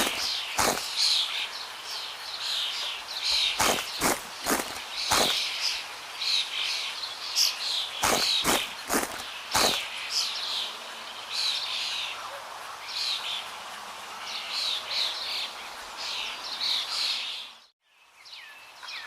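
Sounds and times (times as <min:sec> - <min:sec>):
birds chirping: 0:00.0 - 0:13.5
sweeping bird calls: 0:00.0 - 0:13.5.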